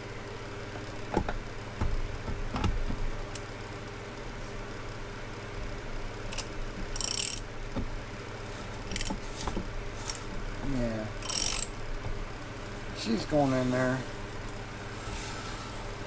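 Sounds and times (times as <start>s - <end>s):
ratchet rattle: 6.3s - 7.5s, 8.9s - 9.2s, 11.2s - 11.8s.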